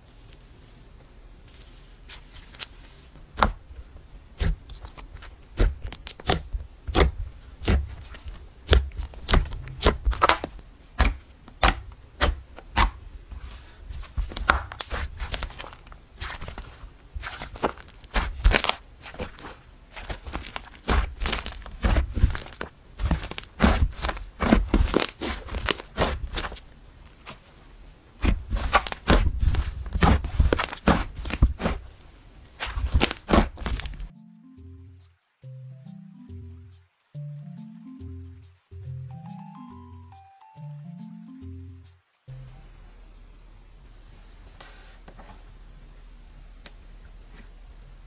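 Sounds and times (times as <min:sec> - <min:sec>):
hands kneading slime: 0:01.4 - 0:34.1.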